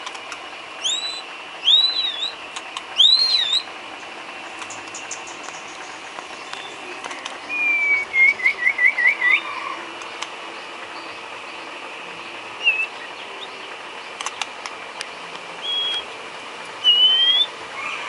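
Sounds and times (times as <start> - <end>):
bird singing whistled notes: 0.8 - 2.4, 3.0 - 3.7, 7.4 - 9.6, 12.6 - 13.8, 15.6 - 16.1, 16.8 - 17.6.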